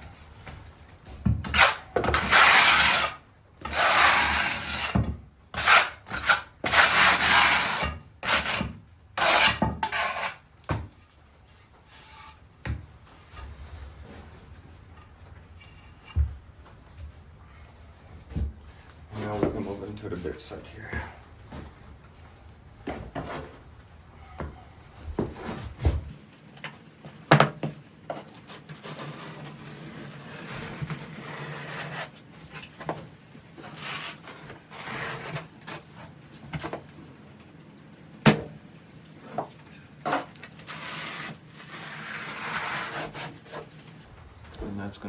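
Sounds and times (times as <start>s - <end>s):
trowel scraping mortar: 1.5s - 10.4s, 28.5s - 32.8s, 33.6s - 36.0s, 40.0s - 43.7s.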